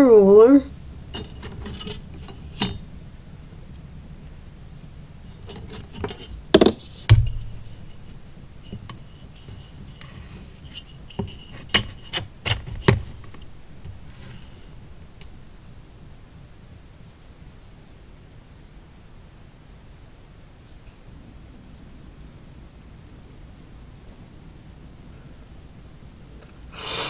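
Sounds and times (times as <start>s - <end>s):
wood pieces clicking on workbench: 5.3s - 15.4s
dull thump: 5.3s - 15.6s.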